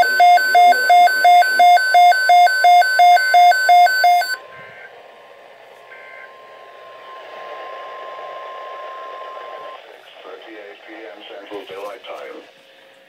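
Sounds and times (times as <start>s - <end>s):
radio hiss: 0.0s - 1.9s, 5.7s - 12.8s
faint steady alert tone: 0.0s - 4.9s
two-tone alarm beeping: 0.0s - 5.0s, 5.9s - 6.4s.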